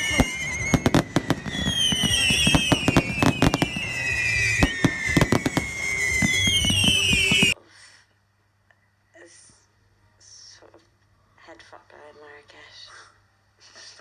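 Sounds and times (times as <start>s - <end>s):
fireworks cracks and bangs: 0.0s - 7.6s
whistling fireworks screeching: 0.0s - 7.6s.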